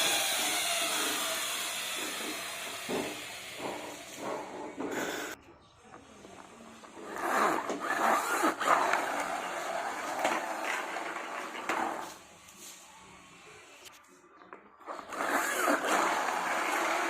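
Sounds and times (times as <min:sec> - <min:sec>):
plastic toy car rolling: 0:06.0 - 0:12.3, 0:14.8 - 0:17.0.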